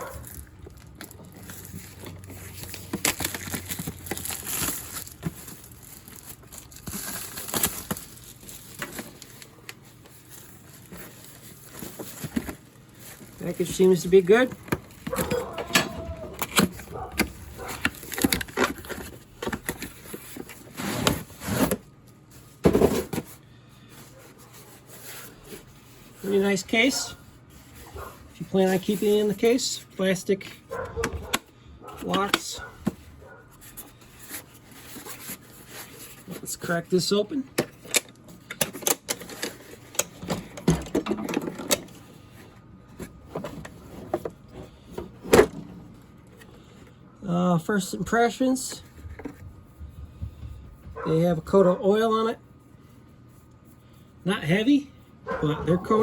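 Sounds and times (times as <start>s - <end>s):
packaging rustling: 0.0s - 29.6s, 32.0s - 46.9s.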